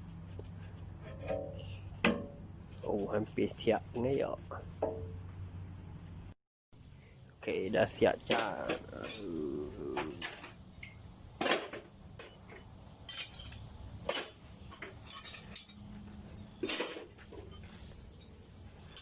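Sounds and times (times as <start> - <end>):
metallic clinks and knocks: 10.0 - 19.0.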